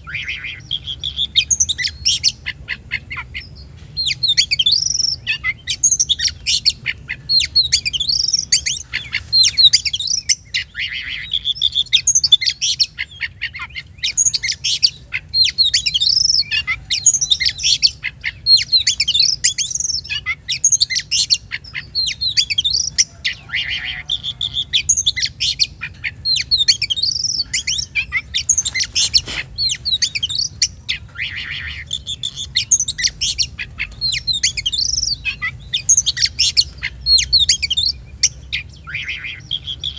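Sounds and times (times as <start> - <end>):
bird singing chirps and trills: 0.0 - 39.9.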